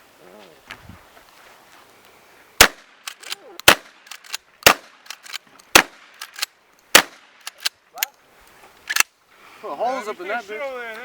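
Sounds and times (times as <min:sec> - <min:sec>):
loud gunshots: 0:02.6 - 0:05.0, 0:05.7 - 0:06.2, 0:06.9 - 0:07.3
faint gunfire cracks: 0:02.6 - 0:07.7.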